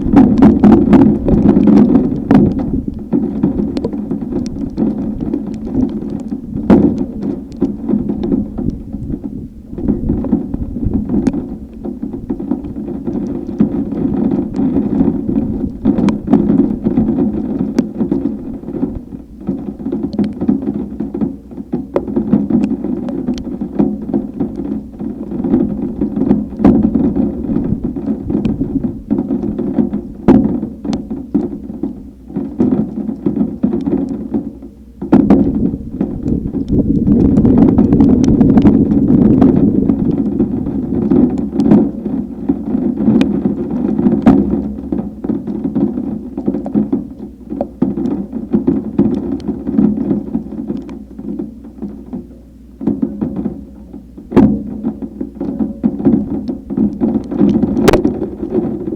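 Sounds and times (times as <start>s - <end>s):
storm wind rumbling: 0.0s - 20.7s, 23.3s - 32.2s, 34.9s - 46.4s, 55.9s - 58.9s.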